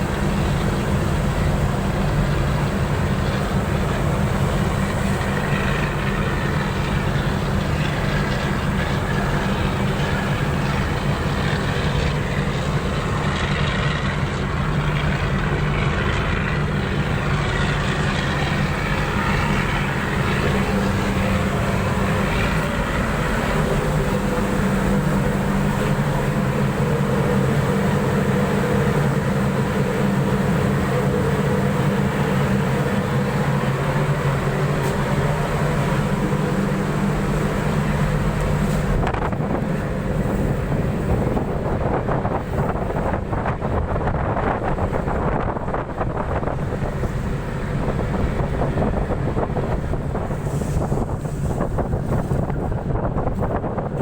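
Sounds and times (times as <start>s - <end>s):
diesel engines humming: 0.0s - 54.0s.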